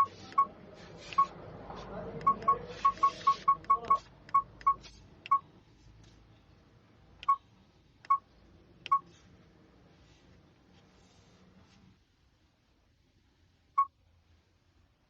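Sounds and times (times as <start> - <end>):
electronic button beeps: 2.2 - 5.5.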